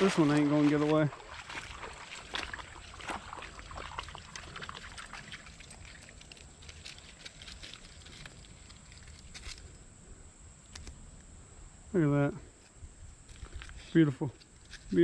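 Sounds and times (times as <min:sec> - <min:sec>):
water splashing and trickling: 0:00.0 - 0:09.6.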